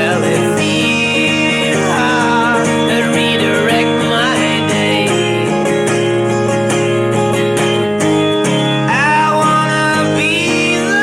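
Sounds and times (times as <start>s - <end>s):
person singing: 0.0s - 5.9s, 8.9s - 11.0s
fast-strummed acoustic guitar: 0.0s - 11.0s.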